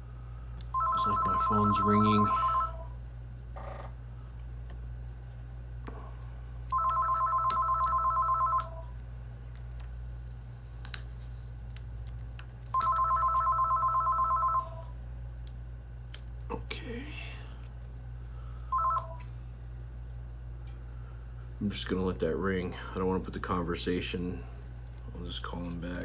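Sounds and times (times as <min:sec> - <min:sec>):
phone ringing electronic trill: 0:00.7 - 0:03.0, 0:06.7 - 0:08.9, 0:12.8 - 0:14.9, 0:18.7 - 0:19.2.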